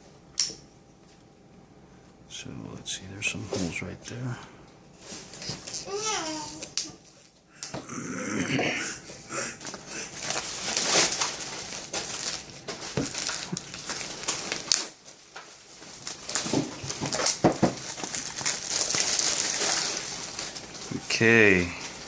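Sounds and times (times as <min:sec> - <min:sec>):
plastic wrap tearing and crinkling: 0:05.0 - 0:06.9, 0:09.6 - 0:22.0.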